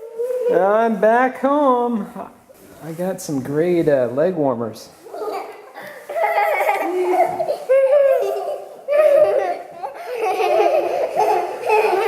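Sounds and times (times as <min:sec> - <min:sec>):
young children laughing: 0:05.1 - 0:12.0.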